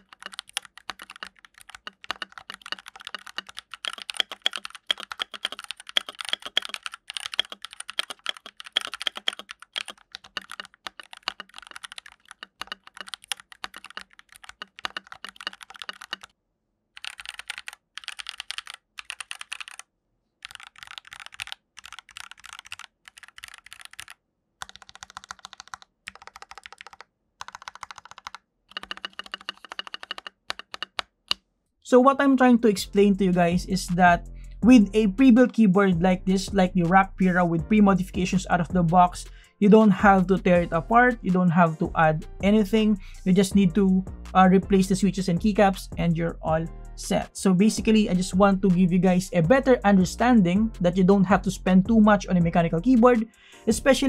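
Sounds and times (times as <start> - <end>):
mechanical keyboard typing: 0.0 - 16.4, 17.0 - 31.4.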